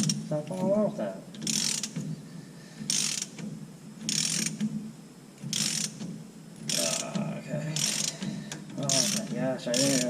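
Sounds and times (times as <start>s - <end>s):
socket ratchet clicking: 1.4s - 2.0s, 2.8s - 3.4s, 4.0s - 4.7s, 5.4s - 7.2s, 7.8s - 10.0s.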